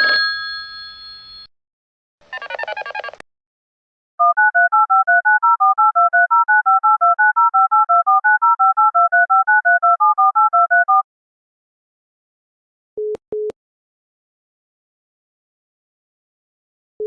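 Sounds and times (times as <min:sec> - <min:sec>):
telephone keypad tones: 0:04.2 - 0:11.0.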